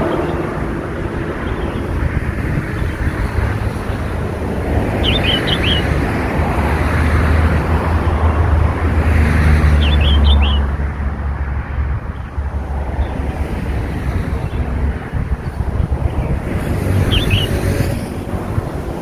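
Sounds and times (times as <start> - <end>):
low rumble of wind or traffic: 0.0 - 19.0
bird chick chirping: 5.0 - 5.9.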